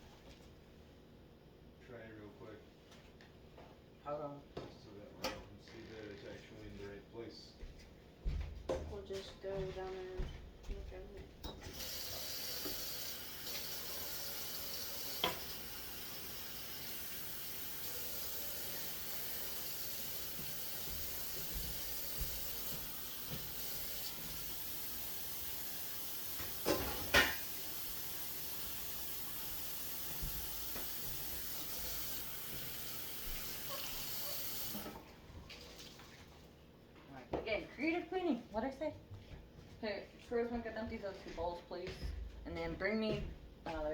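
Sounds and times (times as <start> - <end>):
tap water running into sink: 11.5 - 36.4.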